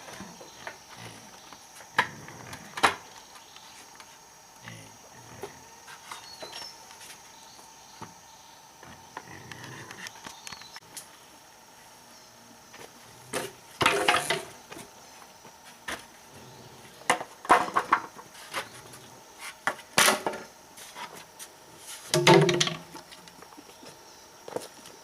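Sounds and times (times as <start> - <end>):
wood pieces knocking together: 22.1 - 22.9.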